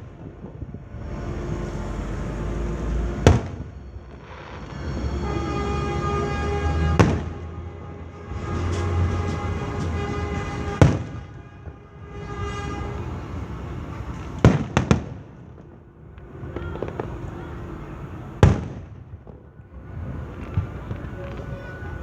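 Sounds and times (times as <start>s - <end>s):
fireworks exploding: 0.0s - 5.6s, 6.6s - 7.5s, 8.3s - 22.0s
steady low rumble: 0.0s - 6.0s
held pitched tone: 1.0s - 6.4s.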